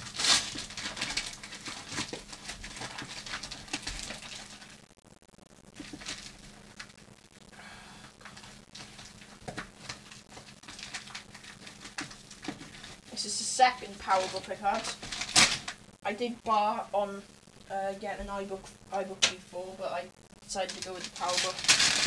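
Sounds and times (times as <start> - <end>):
packaging rustling and crinkling: 0.0 - 4.9, 5.7 - 7.0, 8.1 - 13.1, 13.8 - 15.8, 20.6 - 22.0.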